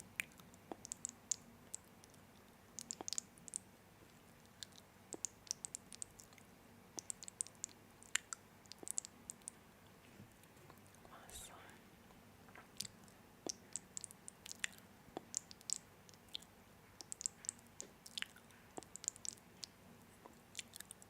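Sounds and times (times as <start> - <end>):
sharp clicks and ticks: 4.6 - 6.1.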